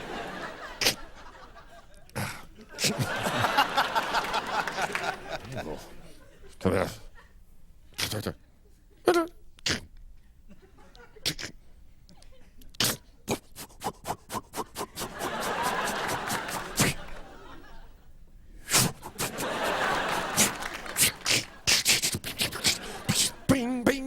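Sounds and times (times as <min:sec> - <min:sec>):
studio audience laughter: 0:00.0 - 0:07.4, 0:14.8 - 0:18.2, 0:18.8 - 0:21.7, 0:22.3 - 0:23.5
quick sharp mouth clicks: 0:00.8 - 0:01.0, 0:08.0 - 0:08.3, 0:09.1 - 0:10.0, 0:11.2 - 0:11.6, 0:12.2 - 0:15.2, 0:16.5 - 0:17.1, 0:18.7 - 0:19.4, 0:20.4 - 0:23.4.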